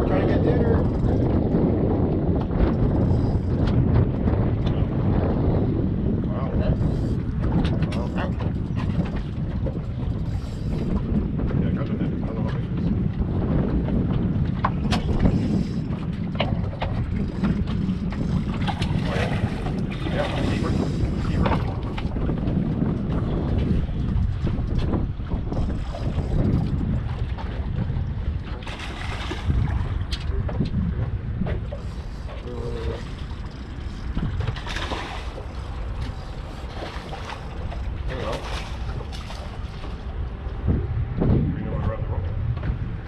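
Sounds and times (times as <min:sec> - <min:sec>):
wind buffeting microphone: 0:00.0 - 0:43.0.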